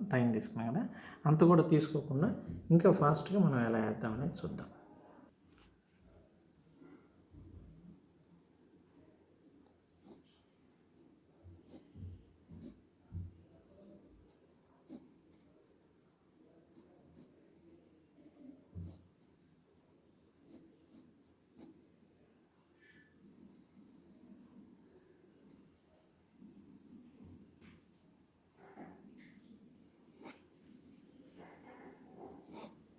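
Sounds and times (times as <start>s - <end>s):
pencil sketching on paper: 10.0s - 10.4s, 11.6s - 12.8s, 14.2s - 15.5s, 18.3s - 21.8s, 27.9s - 32.9s.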